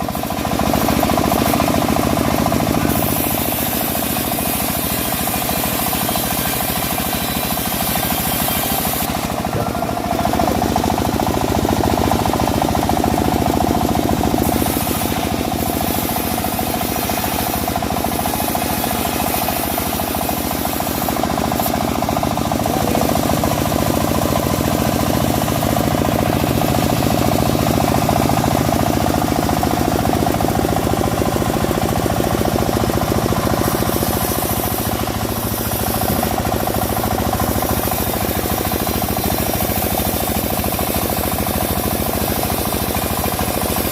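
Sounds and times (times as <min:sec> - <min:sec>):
bandsaw mill engine running: 0:00.0 - 0:43.9
saw blade cutting log: 0:00.0 - 0:43.9.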